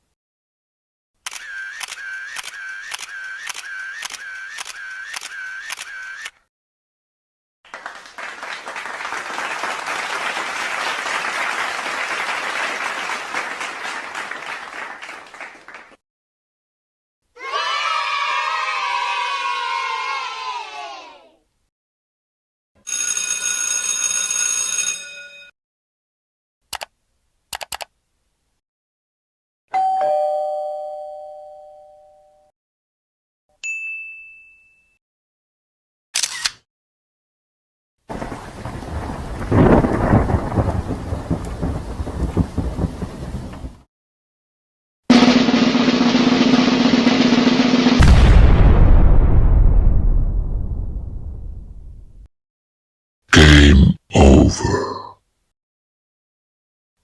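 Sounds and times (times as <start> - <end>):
short clicks: 1.2 - 6.4, 26.7 - 26.9, 27.5 - 27.9, 36.2 - 36.6
crowd applauding: 7.7 - 16.0
doorbell ding-dong chime: 29.7 - 32.5, 33.6 - 35.0
single high ding: 33.6 - 35.0.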